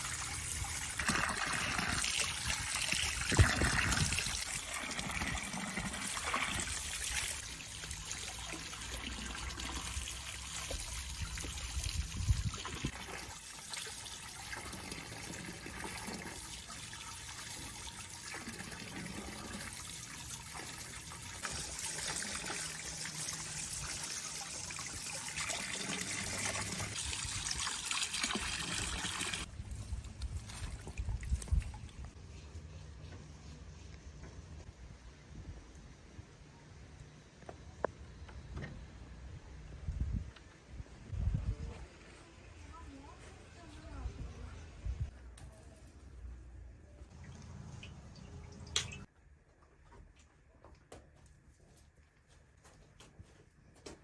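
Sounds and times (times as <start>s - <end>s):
water trickling and splashing: 0.0s - 32.2s, 47.1s - 49.1s.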